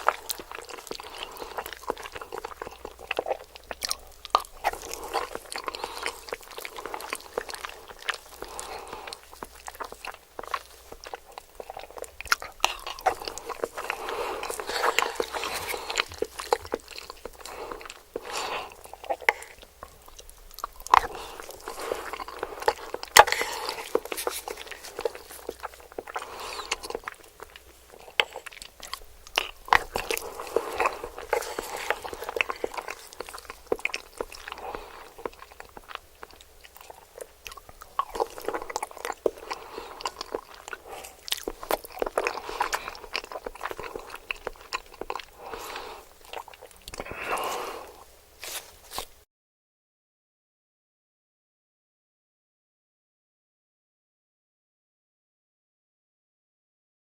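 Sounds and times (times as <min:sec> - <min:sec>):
wet mouth clicks: 0:00.0 - 0:49.1
chewing crispy fried chicken: 0:00.0 - 0:49.2.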